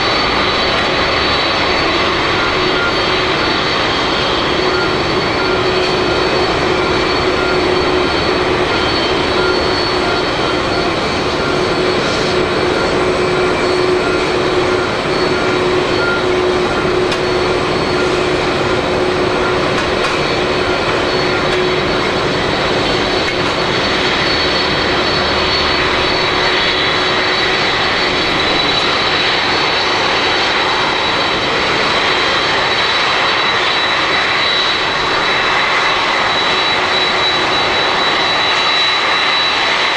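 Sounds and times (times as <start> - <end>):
jet engines roaring with high whine: 0.0 - 39.9.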